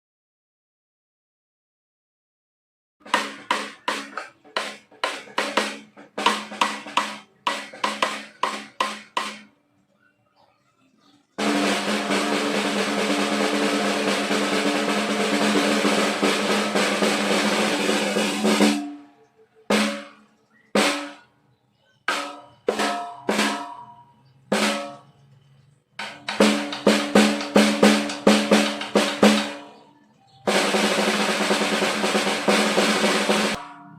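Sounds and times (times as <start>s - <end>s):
snare drum roll: 3.0s - 9.5s, 11.4s - 19.0s, 19.7s - 20.2s, 20.8s - 21.2s, 22.1s - 23.8s, 24.5s - 25.0s, 26.0s - 29.7s, 30.5s - 33.8s
snare drum strokes: 3.0s - 9.5s, 11.4s - 19.0s, 19.7s - 20.2s, 20.8s - 21.2s, 22.1s - 25.1s, 26.0s - 29.7s, 30.5s - 33.8s.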